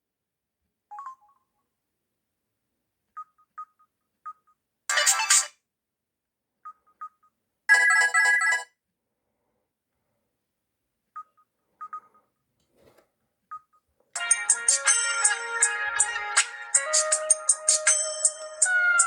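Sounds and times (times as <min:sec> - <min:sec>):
phone ringtone melody: 0:14.2 - 0:19.0.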